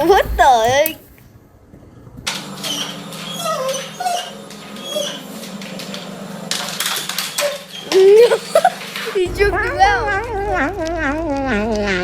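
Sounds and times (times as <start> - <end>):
dog whimpering and yipping: 2.7 - 5.4, 7.2 - 10.0
steady low hum: 8.4 - 12.0.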